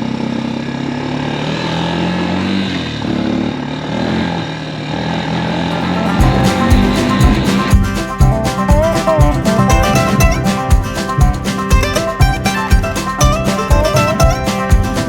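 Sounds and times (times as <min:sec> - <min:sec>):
vehicle engine running: 0:00.0 - 0:15.0
music with heavy beat: 0:05.7 - 0:15.0.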